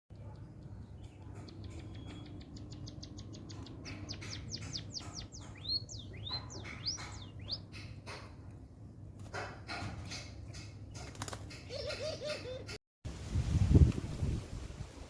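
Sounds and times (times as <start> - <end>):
finch singing: 0.1 - 8.3.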